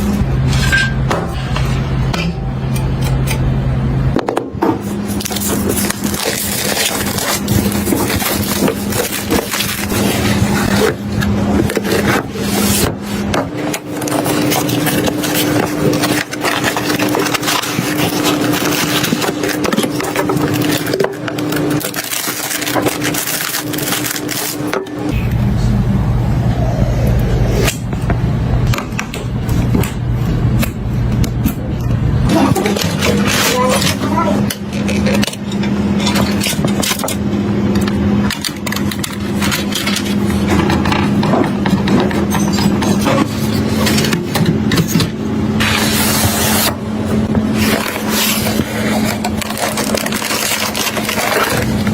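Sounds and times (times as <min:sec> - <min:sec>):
steady low hum: 0:00.0 - 0:51.9
packaging crackling and clicking: 0:04.8 - 0:25.1, 0:32.3 - 0:51.9.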